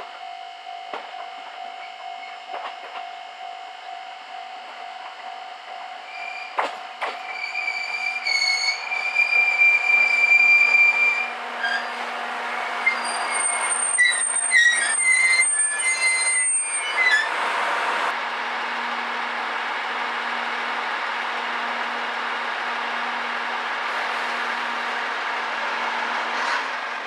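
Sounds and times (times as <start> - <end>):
railcar engine hum: 0.0 - 27.0
railcar clicks: 0.9 - 3.2, 4.6 - 7.4
wheel and brake squeal: 6.1 - 12.0, 12.8 - 17.4.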